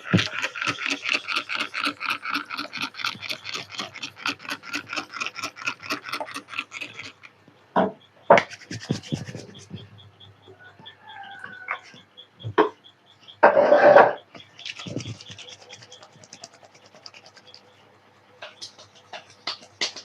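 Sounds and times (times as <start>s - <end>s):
hands rubbing scalp: 8.4s - 9.8s, 14.6s - 17.6s, 18.8s - 20.0s.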